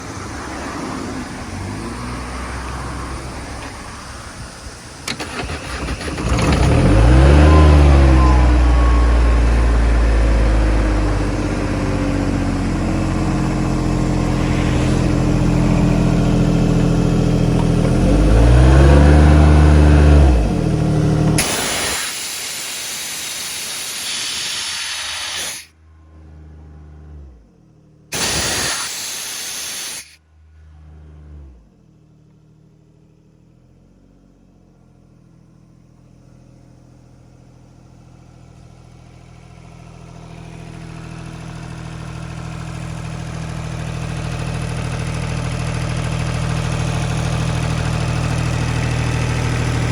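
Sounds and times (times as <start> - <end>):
diesel air compressor engine running: 3.0 - 25.7, 28.1 - 30.2, 40.0 - 49.9
loud air hiss: 21.4 - 25.7, 28.1 - 30.2.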